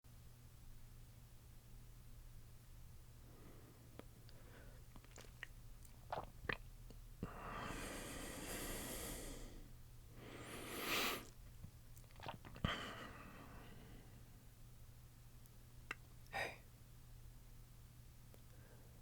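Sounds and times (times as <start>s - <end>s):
soft mouth clicks: 4.9s - 7.0s, 15.4s - 16.4s
man breathing: 7.2s - 11.3s.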